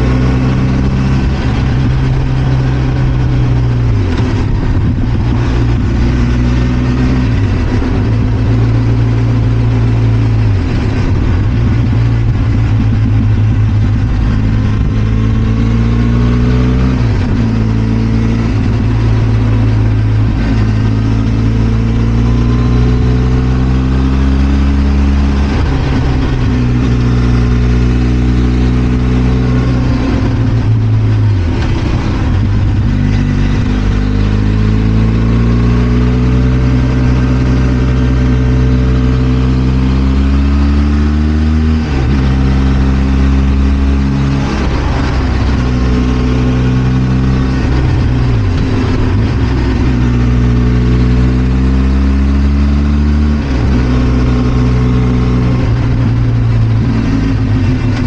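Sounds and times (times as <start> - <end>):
motorcycle engine revving: 0.0 - 58.0
wind and road noise: 0.0 - 58.0.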